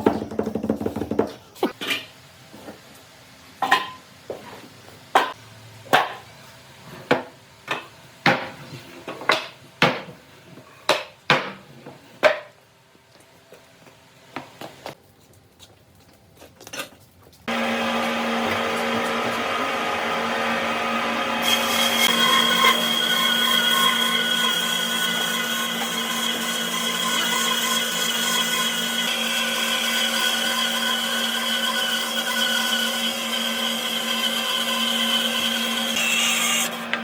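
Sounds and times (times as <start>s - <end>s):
electric power tool running: 17.5s - 23.4s.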